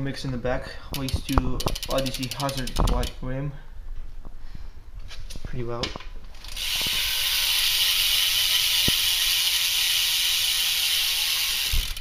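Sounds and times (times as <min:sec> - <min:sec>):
bike freewheel ratchet buzzing: 0:01.0 - 0:03.2, 0:06.3 - 0:12.0.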